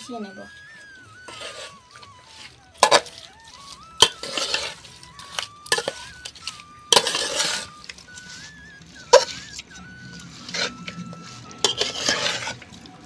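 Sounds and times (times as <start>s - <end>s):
spoon clinking and scraping a bowl: 1.2s - 12.9s.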